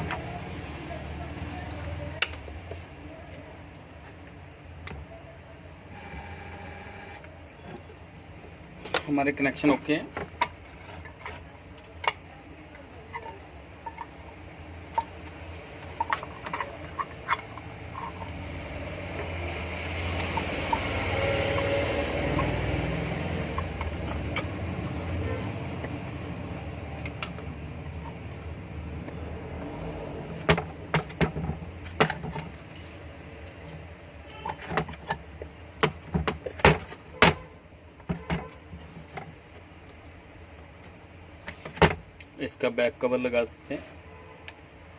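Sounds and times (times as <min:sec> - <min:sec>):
small metal parts clinking: 0:10.4 - 0:22.6, 0:31.9 - 0:35.4.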